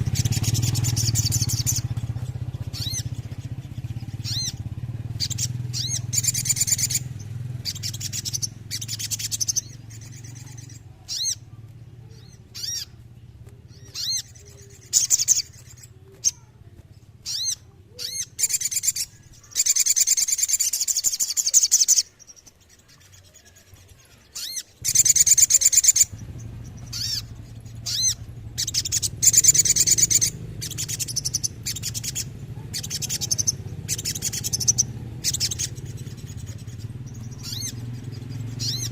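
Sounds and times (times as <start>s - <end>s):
steady low hum: 0.0s - 19.5s
bird song with buzzy trills: 0.0s - 38.9s.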